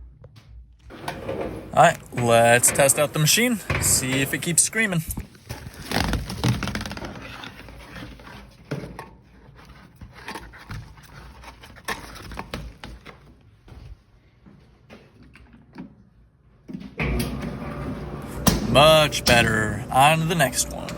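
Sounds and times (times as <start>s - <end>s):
clothes dryer running: 0.9s - 7.1s, 17.0s - 20.9s.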